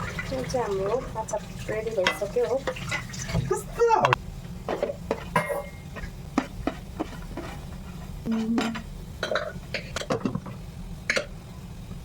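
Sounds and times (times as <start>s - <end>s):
dishes and utensils clinking: 2.0s - 3.5s, 4.7s - 11.3s.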